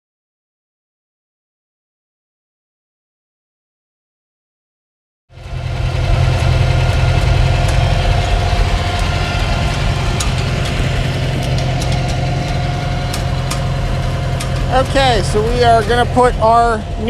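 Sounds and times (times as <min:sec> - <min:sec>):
tractor engine idling: 0:05.4 - 0:17.0.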